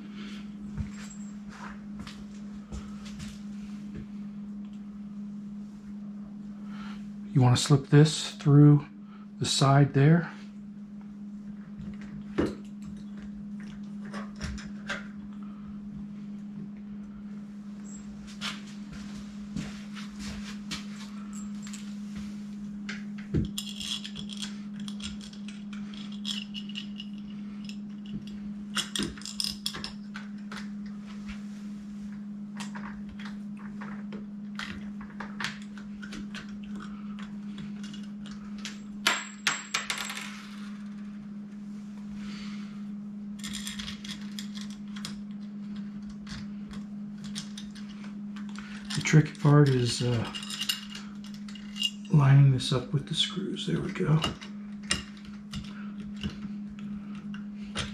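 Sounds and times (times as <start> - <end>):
low hum: 0.0 - 57.9
small metal hardware clinking: 47.2 - 52.2.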